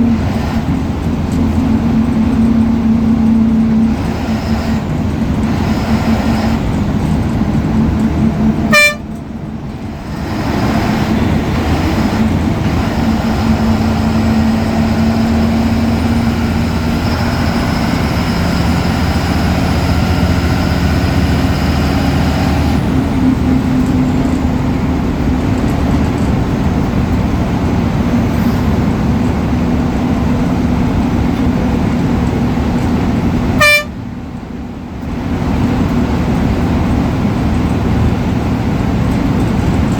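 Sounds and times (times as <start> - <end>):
bus diesel engine running: 0.0 - 39.9
horn toots: 8.6 - 9.2, 33.6 - 34.0
faint high turbo whistle: 8.7 - 9.2.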